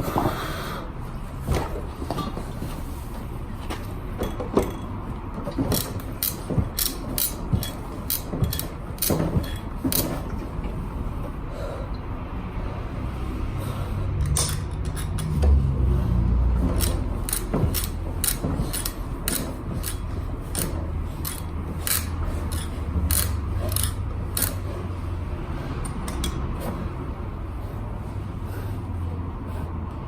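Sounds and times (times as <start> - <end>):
sharp metallic clicks with scraping: 4.3 - 10.8, 14.2 - 15.9, 16.5 - 27.0.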